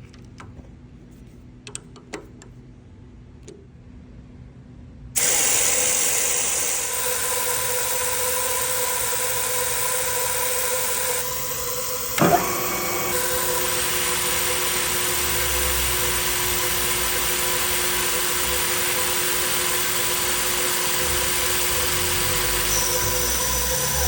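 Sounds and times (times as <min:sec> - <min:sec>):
milling machine humming: 0:05.2 - 0:24.0
coolant mist hissing: 0:12.2 - 0:24.0.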